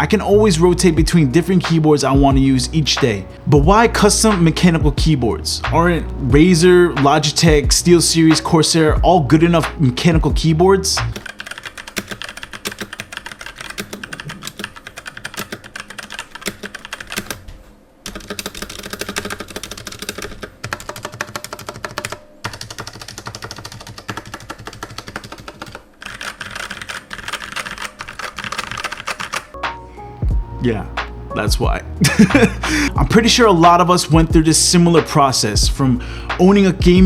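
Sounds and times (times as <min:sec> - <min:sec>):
mechanical keyboard typing: 0:11.1 - 0:17.4, 0:18.0 - 0:29.6.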